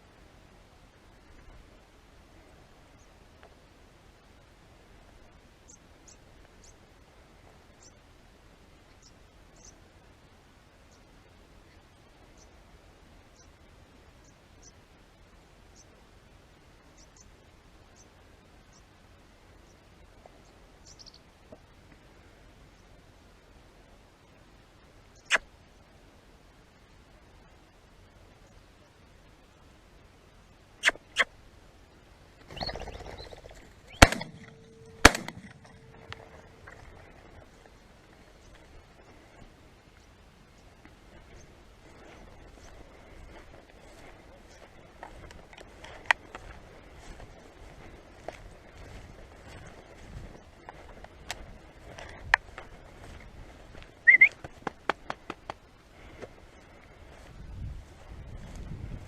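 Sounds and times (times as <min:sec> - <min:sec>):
rush of noise with chirps: 0:04.0 - 0:57.2
shotgun shots: 0:33.9 - 0:36.0
sharp clicks or snaps: 0:34.0 - 0:36.2
short rising whistle: 0:54.1 - 0:54.3.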